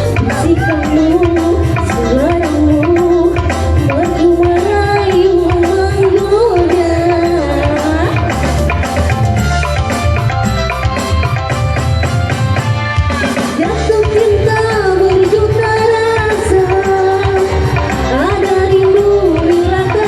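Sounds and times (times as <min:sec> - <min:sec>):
person singing: 0:00.0 - 0:09.0, 0:13.2 - 0:20.0
drum and bass beat: 0:00.0 - 0:20.0.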